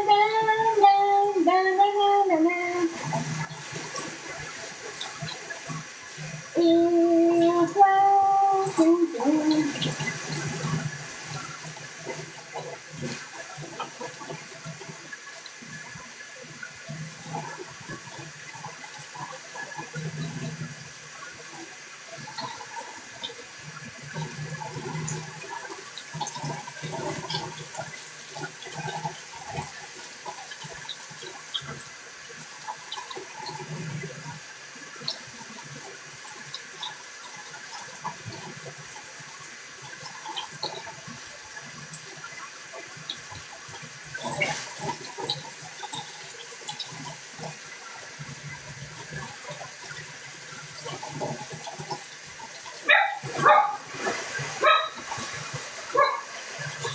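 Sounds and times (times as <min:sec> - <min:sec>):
running water splashing: 0:00.0 - 0:56.9.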